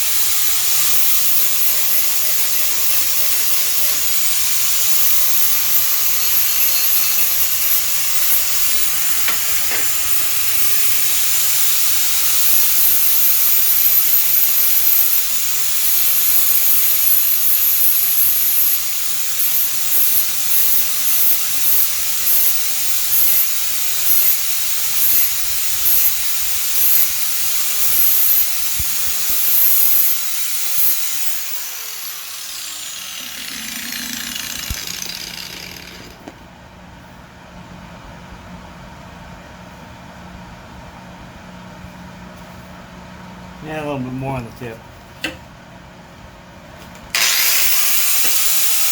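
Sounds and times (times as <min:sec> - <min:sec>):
grinder grinding metal: 0:00.0 - 0:36.3, 0:47.2 - 0:48.9
grinder winding down: 0:00.0 - 0:36.4, 0:47.1 - 0:48.9.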